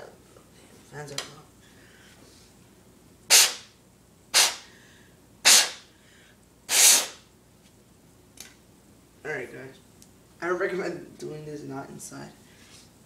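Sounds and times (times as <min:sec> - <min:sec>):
compressed air blasts: 0:03.3 - 0:04.8, 0:05.4 - 0:05.9, 0:06.7 - 0:07.3.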